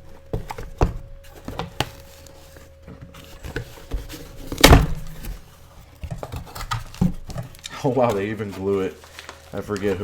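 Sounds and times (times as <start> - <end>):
packaging clicks and knocks: 0.0 - 8.3
package rustling: 0.0 - 10.0.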